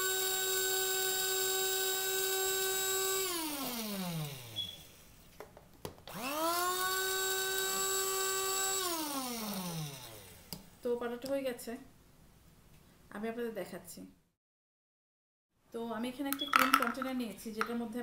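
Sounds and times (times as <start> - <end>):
electric coffee grinder whirring: 0.0 - 5.1, 6.1 - 10.6.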